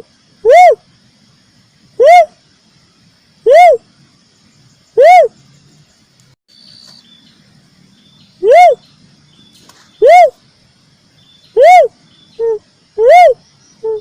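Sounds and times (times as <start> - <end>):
dove cooing: 8.4 - 8.8, 10.0 - 10.4, 11.6 - 14.0.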